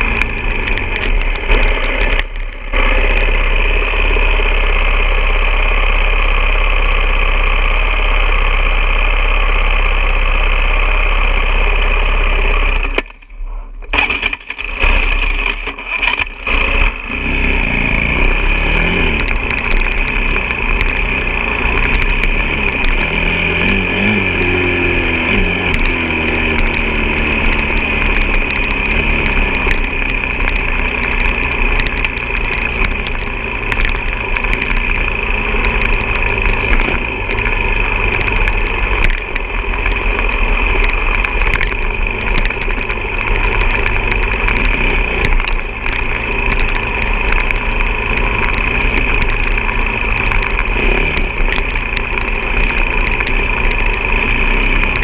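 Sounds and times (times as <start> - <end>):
small clicks and knocks: 0.0 - 3.3, 18.2 - 55.0
motorcycle engine revving: 0.0 - 13.0, 13.9 - 55.0.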